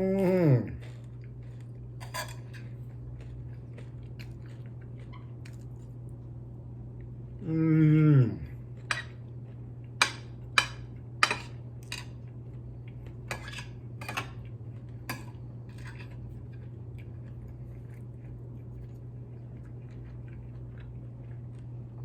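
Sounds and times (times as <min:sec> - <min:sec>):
steady low hum: 0:00.0 - 0:22.0
utensils clinking on a plate: 0:02.0 - 0:02.7, 0:13.3 - 0:14.4.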